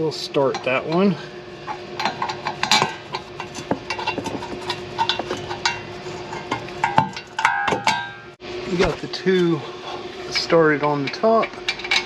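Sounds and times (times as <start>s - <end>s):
metal bolts and tools clinking: 1.7s - 8.2s, 10.4s - 12.0s.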